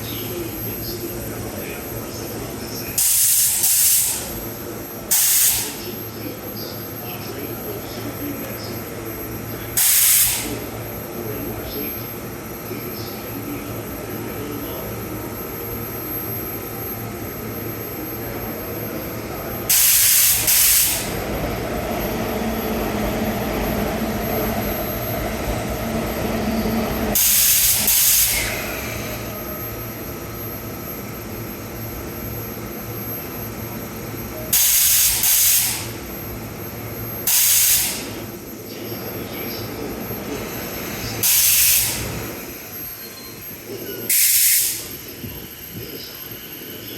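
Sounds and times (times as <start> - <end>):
steady mechanical hum: 0.0 - 46.9
loud air hiss bursts: 3.0 - 4.3, 5.1 - 5.8, 9.8 - 10.6, 19.7 - 21.2, 27.2 - 28.6, 34.5 - 36.0, 37.3 - 38.2, 41.2 - 42.2, 44.1 - 44.9.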